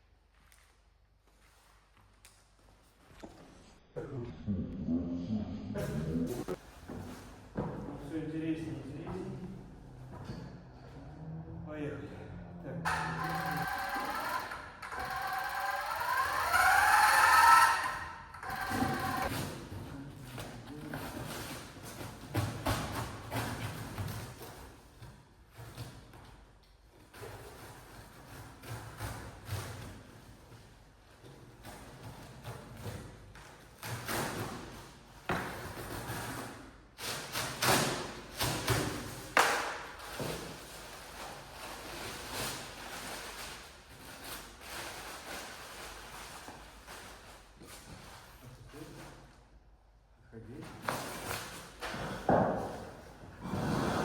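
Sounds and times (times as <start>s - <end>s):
small electric motor whining: 12.9s - 19.3s.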